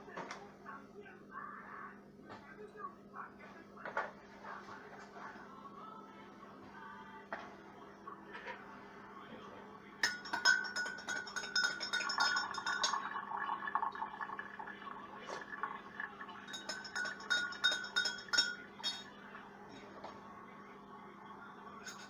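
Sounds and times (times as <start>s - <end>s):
spoon clinking in coffee cup: 10.0s - 13.4s, 16.5s - 19.2s, 21.8s - 22.0s.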